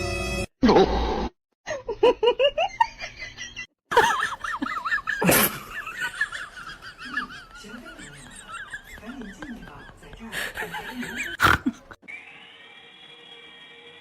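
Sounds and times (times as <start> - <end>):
people laughing: 1.7 - 12.0.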